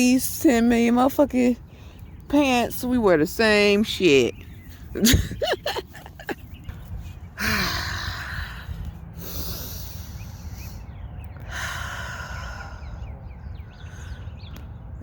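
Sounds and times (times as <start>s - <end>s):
low steady rumble: 0.0s - 15.0s
person breathing noisily: 7.4s - 10.9s.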